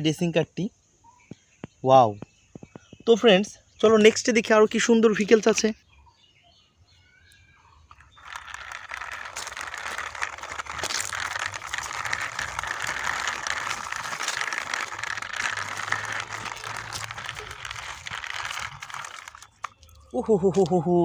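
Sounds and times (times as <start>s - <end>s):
plastic toy wheels rattling: 7.8s - 20.8s.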